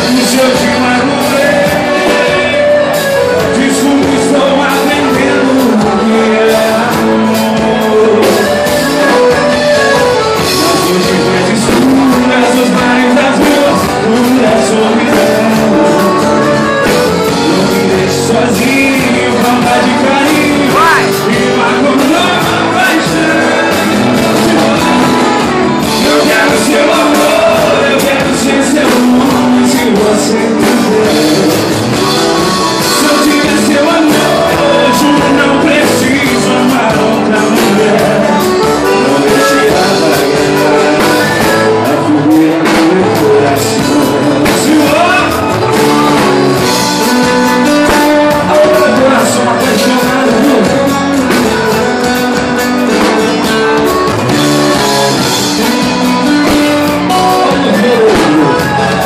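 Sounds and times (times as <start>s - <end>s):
amplified guitar: 0.0s - 59.0s
lead vocal singing: 0.0s - 59.0s
live band playing: 0.0s - 59.0s.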